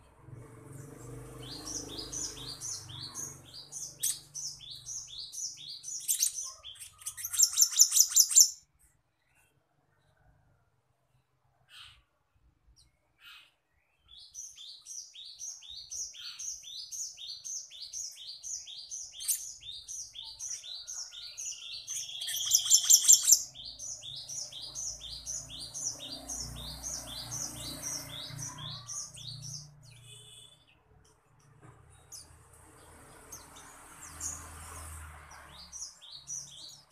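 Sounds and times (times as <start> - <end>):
harsh rattling bird call: 0.6 - 8.6, 14.4 - 30.6.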